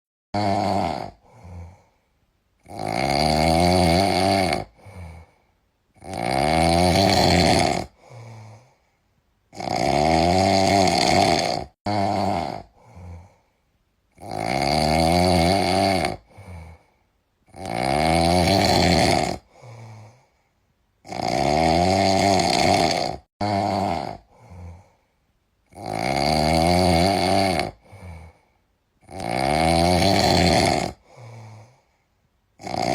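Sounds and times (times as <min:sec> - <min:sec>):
cat snoring: 0:00.4 - 0:01.9, 0:02.6 - 0:05.4, 0:06.0 - 0:08.7, 0:09.5 - 0:13.4, 0:14.2 - 0:16.9, 0:17.5 - 0:20.2, 0:21.0 - 0:24.9, 0:25.7 - 0:28.4, 0:29.0 - 0:31.8, 0:32.6 - 0:32.9.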